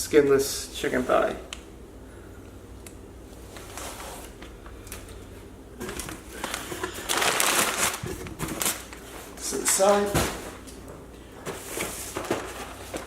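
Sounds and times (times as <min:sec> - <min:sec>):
packaging crinkling and rustling: 0:05.8 - 0:10.4.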